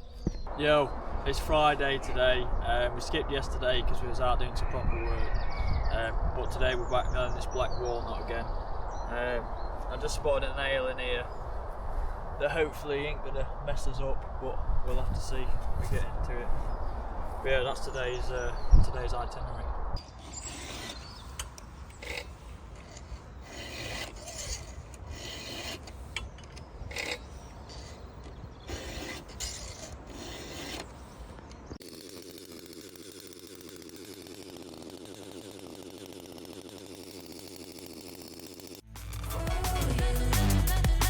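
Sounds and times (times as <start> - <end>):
steady low noise: 0.0 - 20.0
scraping and rubbing wood: 20.0 - 34.2
loud electronic music: 38.9 - 41.0.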